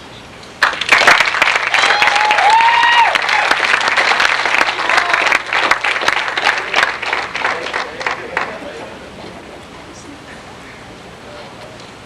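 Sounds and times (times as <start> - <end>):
audience applause: 0.6 - 9.0
high calls from crowd: 1.6 - 11.0.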